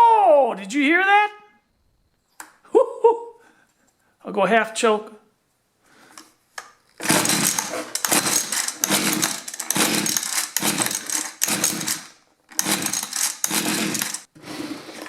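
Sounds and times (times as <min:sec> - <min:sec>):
engine cranking on pull-starter: 0:06.9 - 0:14.3.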